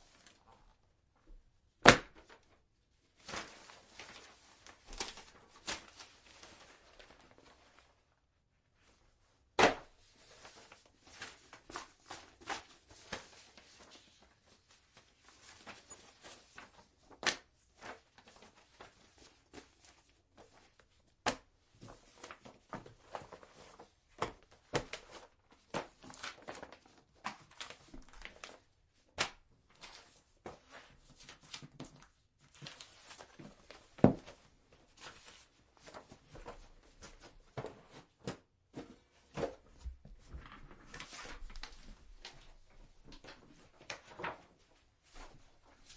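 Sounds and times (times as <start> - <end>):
book banged down: 1.8 - 2.3, 9.6 - 9.9, 34.0 - 34.4
pages rustling and flipping: 3.2 - 8.0, 9.6 - 45.9.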